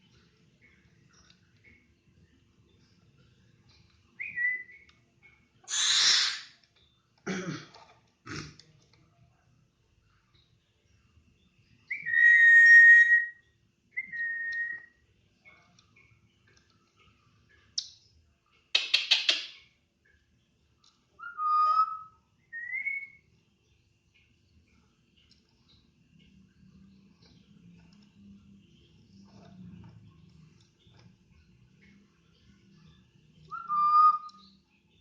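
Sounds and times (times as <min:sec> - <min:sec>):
parrot squawk: 0:05.7 - 0:06.6
parrot whistling: 0:11.9 - 0:13.4, 0:21.2 - 0:23.2, 0:33.5 - 0:34.4.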